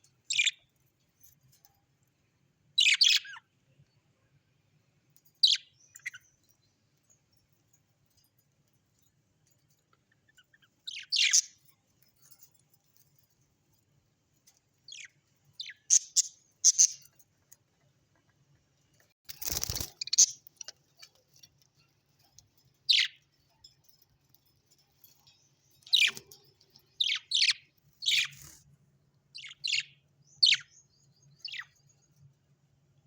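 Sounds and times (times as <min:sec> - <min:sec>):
parrots chirping: 0:02.8 - 0:03.4, 0:10.3 - 0:11.6, 0:14.9 - 0:17.1, 0:19.5 - 0:21.5, 0:22.9 - 0:23.3, 0:25.8 - 0:28.4, 0:29.4 - 0:30.7.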